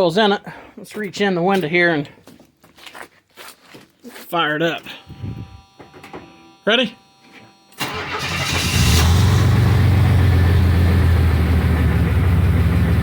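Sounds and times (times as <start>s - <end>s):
car engine starting and idling: 7.8s - 13.0s.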